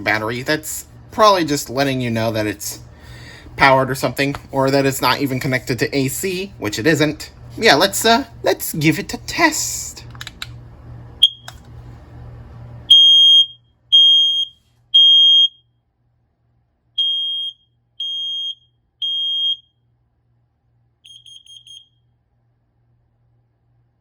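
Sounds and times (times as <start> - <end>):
smoke alarm chirps: 11.2 - 11.5, 12.9 - 15.7, 17.0 - 19.8, 21.0 - 22.1
smoke alarm beeping: 11.2 - 11.6, 12.9 - 15.7, 17.0 - 19.8, 21.0 - 22.1.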